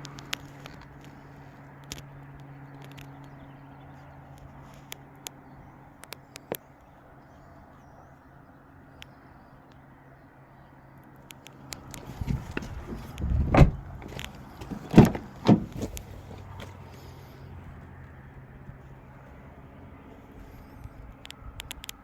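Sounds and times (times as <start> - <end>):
car doors thumping shut: 12.2 - 16.8.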